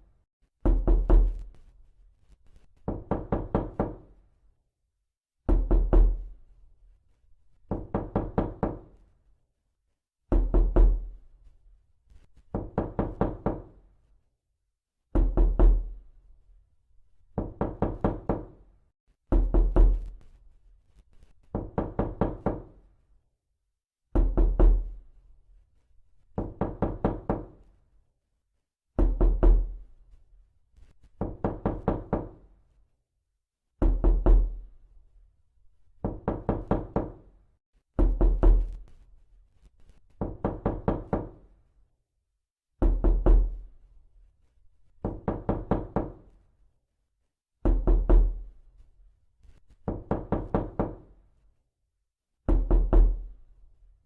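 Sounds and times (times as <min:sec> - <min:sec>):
knuckles knocking on a door: 0:00.7 - 0:01.5, 0:02.8 - 0:04.1, 0:05.5 - 0:06.3, 0:07.7 - 0:08.9, 0:10.3 - 0:11.1, 0:12.5 - 0:13.8, 0:15.1 - 0:15.9, 0:17.4 - 0:18.6, 0:19.3 - 0:20.1, 0:21.5 - 0:22.8, 0:24.2 - 0:24.9, 0:26.4 - 0:27.6, 0:29.0 - 0:29.8, 0:31.2 - 0:32.4, 0:33.8 - 0:34.6, 0:36.0 - 0:37.3, 0:38.0 - 0:38.8, 0:40.2 - 0:41.5, 0:42.8 - 0:43.6, 0:45.0 - 0:46.2, 0:47.6 - 0:48.4, 0:49.8 - 0:51.0, 0:52.5 - 0:53.3.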